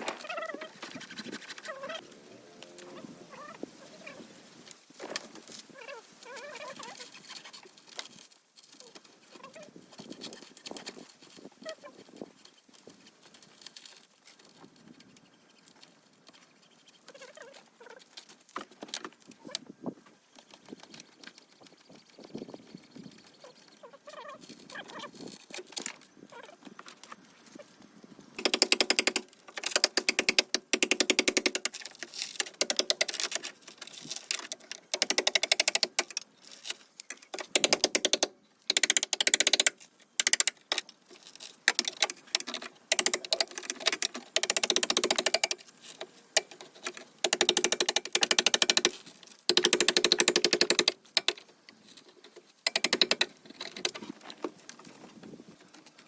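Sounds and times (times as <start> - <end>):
power tool rattling on metal: 28.4 - 36.2, 37.2 - 40.8, 41.6 - 51.4, 52.6 - 54.2.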